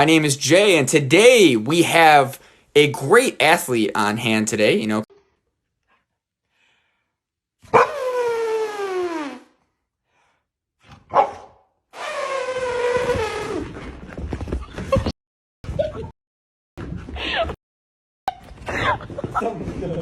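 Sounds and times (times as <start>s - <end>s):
dog yelp: 7.7s - 8.6s, 11.1s - 11.5s.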